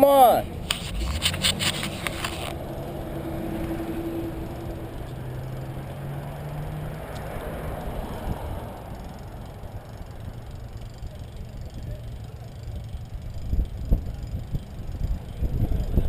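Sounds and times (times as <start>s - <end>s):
bicycle tyres rumbling: 0.0s - 16.0s
traffic: 0.0s - 16.0s
wind: 0.0s - 16.0s
rattling clicks: 0.6s - 2.6s
faint engine hum passing: 2.4s - 16.0s.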